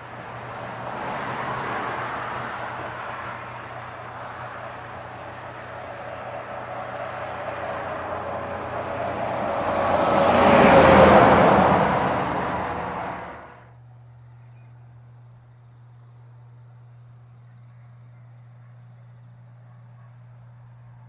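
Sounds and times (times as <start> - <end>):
heavy truck passing: 0.0 - 13.7
faint low hum: 13.7 - 21.0.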